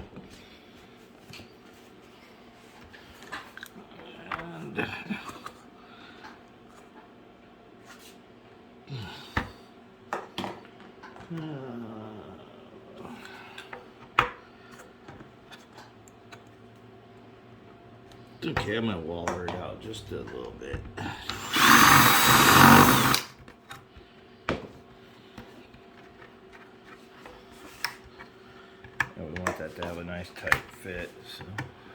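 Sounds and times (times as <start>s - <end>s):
power drill running: 21.2s - 23.3s.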